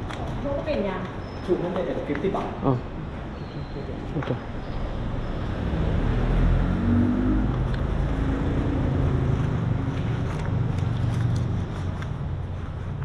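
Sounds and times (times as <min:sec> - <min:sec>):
vehicle engine humming: 0:03.6 - 0:13.0.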